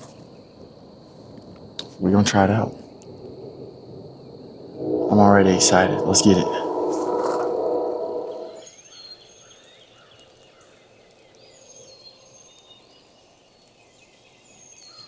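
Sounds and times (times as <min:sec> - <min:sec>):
high whistled bird notes: 0:04.6 - 0:08.6.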